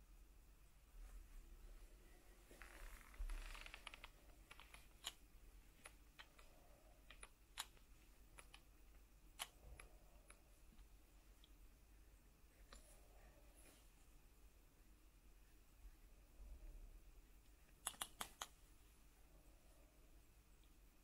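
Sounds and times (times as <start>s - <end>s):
plastic toys clicking and tapping: 17.8s - 18.5s.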